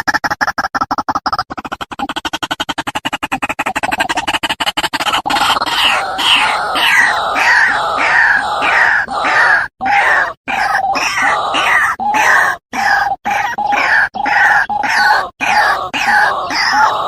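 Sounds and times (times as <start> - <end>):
bird stuttering rattle: 0.0 - 9.2
bird croaking notes: 0.0 - 17.0.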